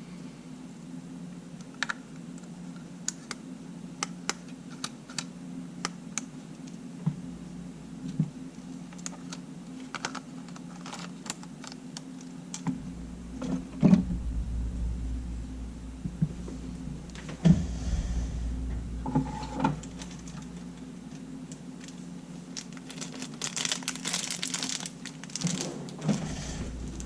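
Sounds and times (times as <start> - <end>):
steady low hum: 0.0 - 9.9, 11.2 - 24.0, 25.8 - 27.0
loud knock: 12.7 - 20.3.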